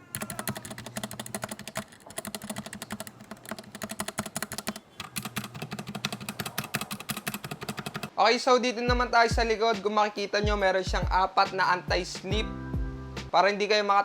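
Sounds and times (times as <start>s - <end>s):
mechanical keyboard typing: 0.0s - 8.1s.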